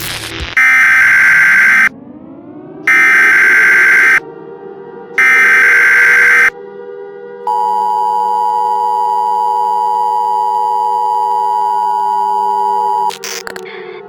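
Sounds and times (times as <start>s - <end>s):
harsh buzzing data burst: 0.0s - 1.9s, 2.9s - 4.2s, 5.2s - 6.5s, 13.0s - 13.6s
low steady drone: 1.9s - 8.4s
steady attention tone: 2.9s - 4.2s, 5.2s - 6.5s.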